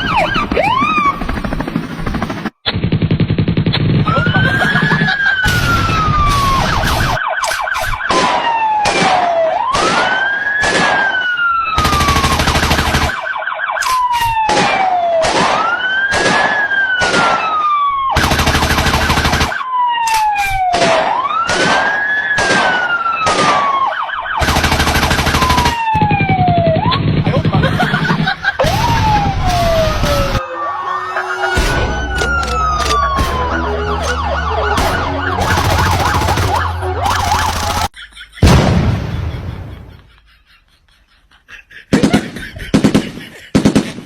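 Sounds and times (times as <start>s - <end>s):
wailing siren: 0.0s - 1.7s, 4.0s - 38.0s
gunfire bangs and rattling: 8.0s - 11.2s, 14.4s - 17.5s, 18.2s - 19.6s, 20.7s - 23.8s, 24.4s - 30.3s, 34.8s - 36.8s, 41.9s - 44.0s.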